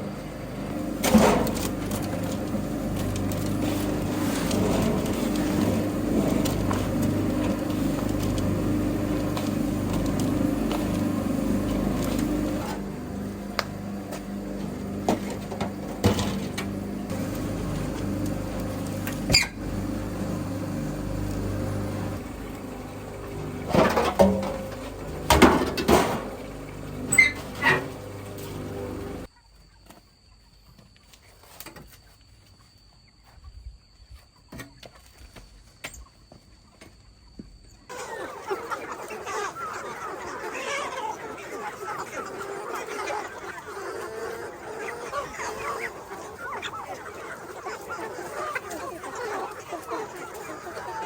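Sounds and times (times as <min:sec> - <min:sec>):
machine motor humming: 0:00.0 - 0:29.3.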